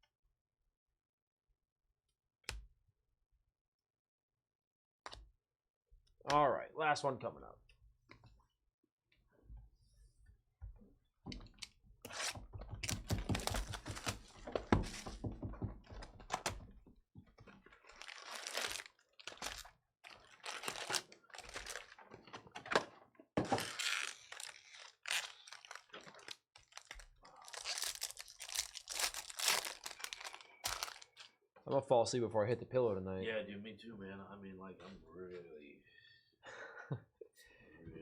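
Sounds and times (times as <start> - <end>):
cards clicking and thunking: 12.6 - 16.6
wrapper tearing and crinkling: 17.8 - 22.0, 23.4 - 31.3.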